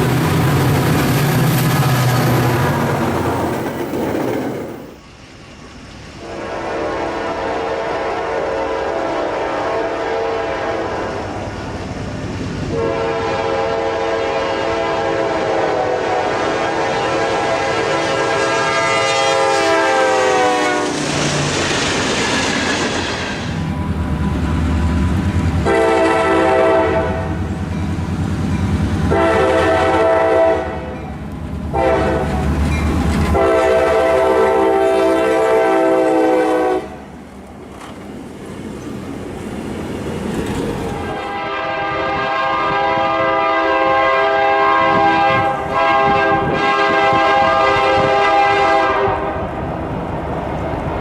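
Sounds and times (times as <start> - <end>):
rumble of passing train: 0.0 - 51.0
locomotive air horn blasts: 6.2 - 11.3, 12.7 - 21.0, 25.6 - 27.4, 29.1 - 31.0, 31.7 - 32.5, 33.3 - 37.0, 41.0 - 49.4.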